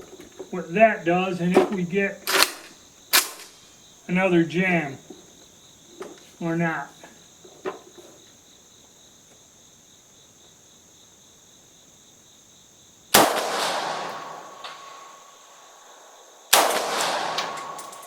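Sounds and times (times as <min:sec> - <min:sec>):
high insect chirring: 0:00.0 - 0:13.2, 0:13.8 - 0:18.0
rifle shot with long echo: 0:02.3 - 0:03.6, 0:13.1 - 0:18.0.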